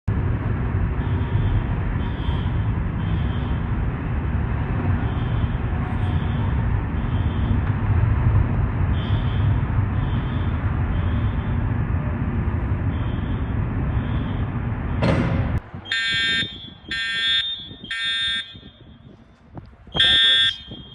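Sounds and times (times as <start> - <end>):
loud steady low rumble: 0.1 - 20.9
faint fire alarm beeps: 9.0 - 11.7, 12.8 - 15.0, 15.9 - 19.2, 19.9 - 20.9.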